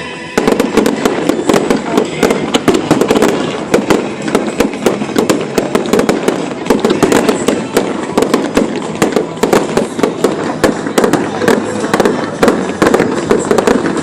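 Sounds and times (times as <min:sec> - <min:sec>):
fireworks pops and bangs: 0:00.4 - 0:14.0.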